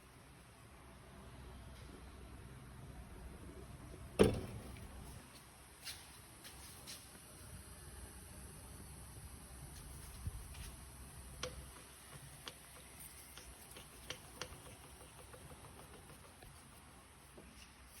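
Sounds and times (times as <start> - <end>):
sharp light clicks and taps: 11.4 - 16.6.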